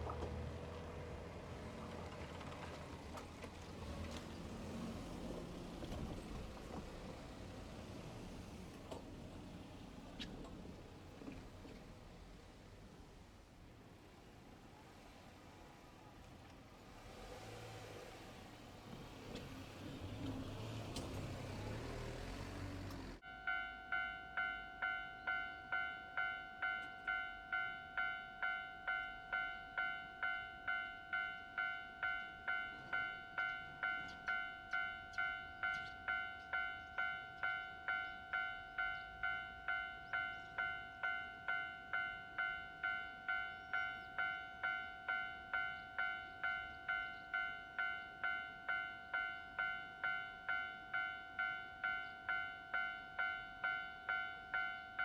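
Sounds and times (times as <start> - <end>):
level crossing warning bell: 23.2 - 55.0.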